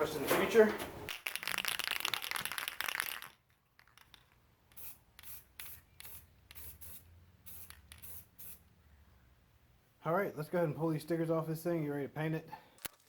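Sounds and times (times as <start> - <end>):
spray can rattling: 1.1 - 8.6
spray paint hissing bursts: 4.7 - 8.7.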